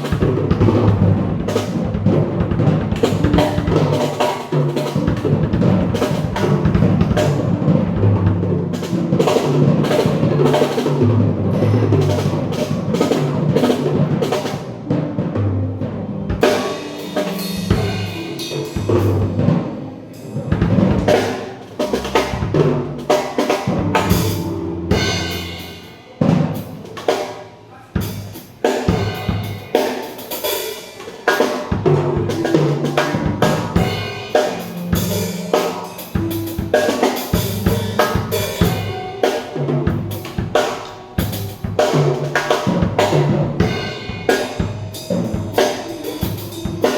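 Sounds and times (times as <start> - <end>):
drum kit playing: 0.0 - 46.9
cymbals ringing: 16.4 - 20.4, 21.1 - 26.2, 32.3 - 46.9.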